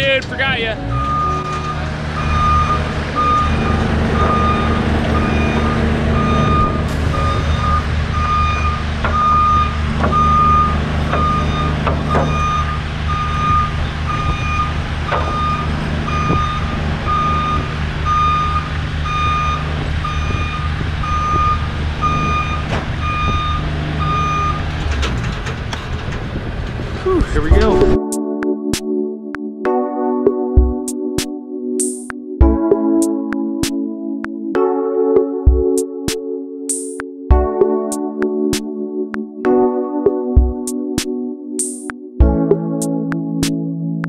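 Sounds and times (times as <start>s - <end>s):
knocks and clanks: 0.0s - 7.5s, 9.0s - 17.9s, 19.6s - 27.9s
backup alarm beeping: 0.4s - 24.7s
machine engine running: 1.0s - 9.2s.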